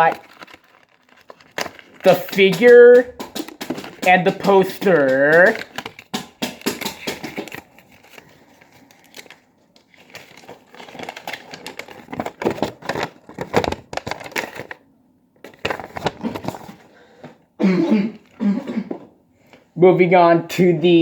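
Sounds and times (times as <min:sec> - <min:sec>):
toy packaging crinkling: 0:00.0 - 0:14.8.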